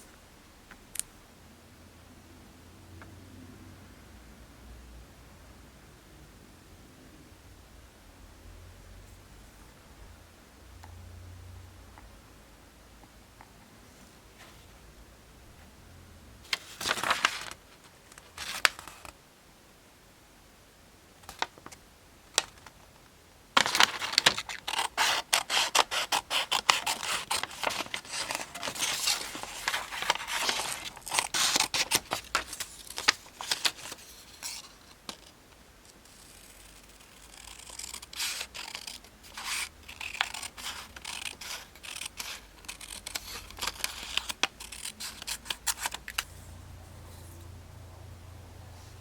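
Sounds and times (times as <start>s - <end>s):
scissors snipping: 36.2s - 46.2s.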